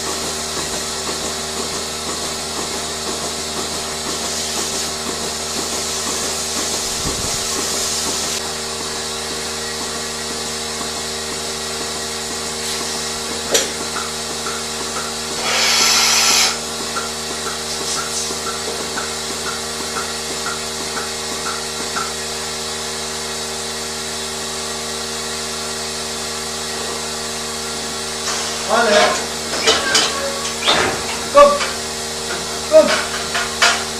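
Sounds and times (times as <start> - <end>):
hissing air burst: 15.4 - 16.6
machinery hum: 26.3 - 33.9.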